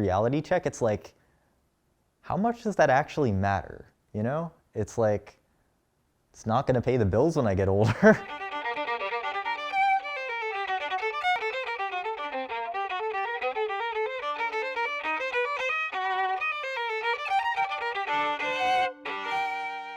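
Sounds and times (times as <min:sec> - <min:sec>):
solo violin playing fast notes: 0:08.2 - 0:19.9.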